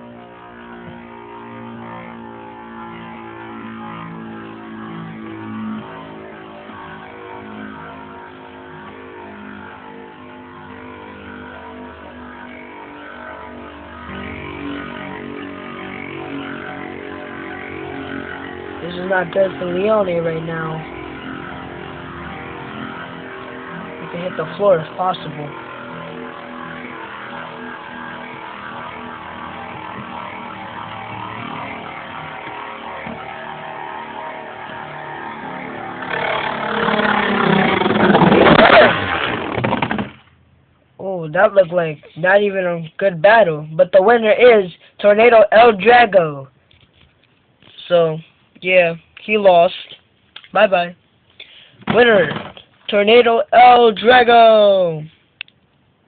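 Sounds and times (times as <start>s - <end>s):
low hum: 0.0s - 49.3s
spinning tops whirring and scraping: 13.2s - 40.3s
tops clashing and scraping: 37.6s - 40.3s.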